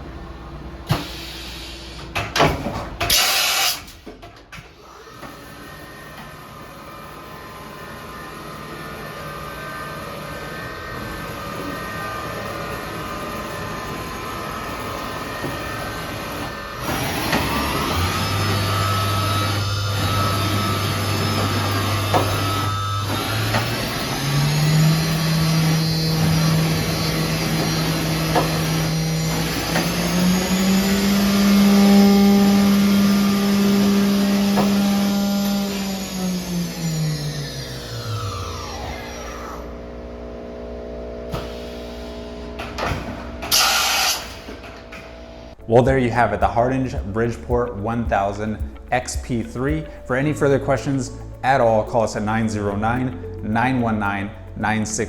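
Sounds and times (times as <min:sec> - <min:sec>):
machining center hum: 0:00.0 - 0:55.0
spindle whine rising: 0:04.8 - 0:55.0.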